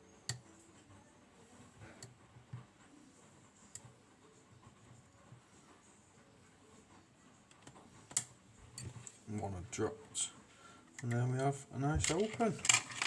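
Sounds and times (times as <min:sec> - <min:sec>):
lock pick clicking and scraping: 0:12.0 - 0:13.0.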